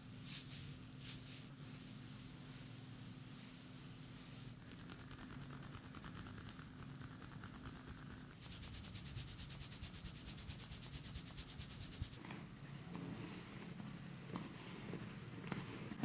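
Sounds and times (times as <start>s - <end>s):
hands rubbing over skin: 8.4s - 12.2s.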